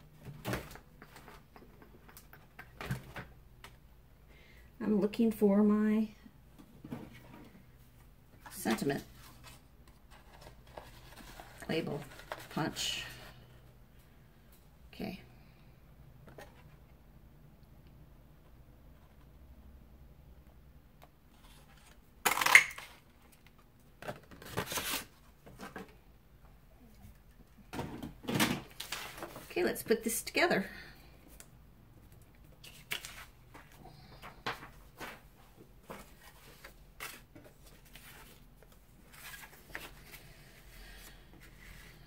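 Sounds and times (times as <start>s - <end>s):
paper rustling: 32.6s - 42.0s.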